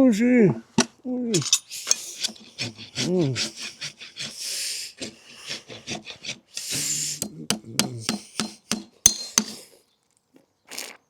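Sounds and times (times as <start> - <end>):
rasp scraping hoof: 1.4 - 9.8
sharp knock: 7.2 - 9.6.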